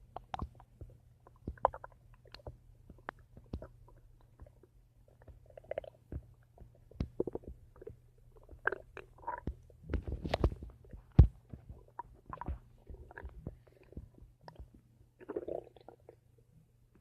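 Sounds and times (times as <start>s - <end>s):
stomach gurgling and popping: 0.0s - 17.0s.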